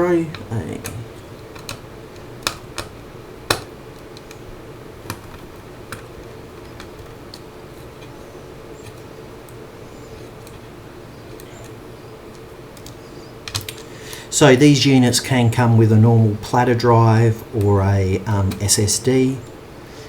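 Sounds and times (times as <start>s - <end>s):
faint steady hum: 0.0s - 20.0s
screwdriver clicks and taps: 1.5s - 4.4s.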